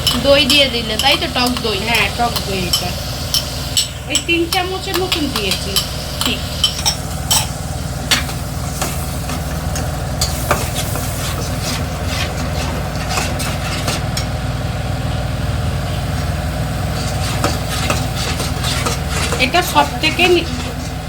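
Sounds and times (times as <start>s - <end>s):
utensil clinking on pan: 0.0s - 10.8s
spatula scraping a pan: 0.0s - 14.3s, 15.8s - 21.0s
masala sizzling in a pan: 0.0s - 21.0s
steady low hum: 0.0s - 21.0s.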